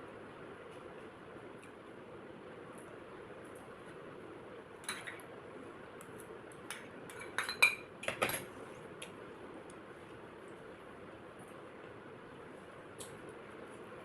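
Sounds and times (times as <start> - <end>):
cutlery clinking on a plate: 6.7 - 8.5.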